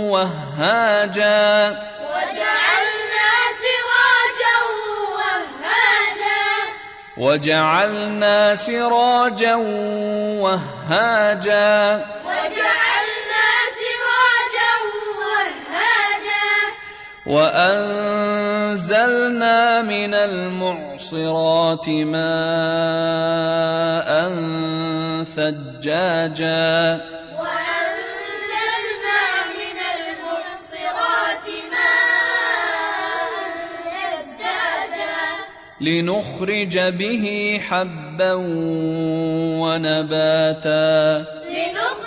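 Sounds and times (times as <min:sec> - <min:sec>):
children chanting recitation: 0:01.0 - 0:06.8, 0:11.4 - 0:17.5, 0:26.4 - 0:35.6, 0:40.9 - 0:42.0.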